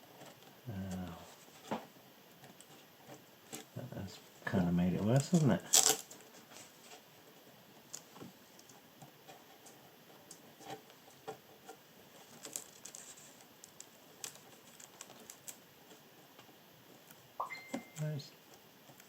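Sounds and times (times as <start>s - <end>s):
small clicks and taps: 7.8s - 19.0s.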